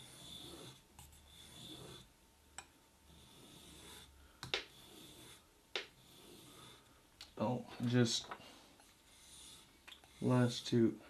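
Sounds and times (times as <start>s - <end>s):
knife rasping on whetstone: 0.0s - 2.1s, 3.1s - 6.9s, 8.9s - 10.8s.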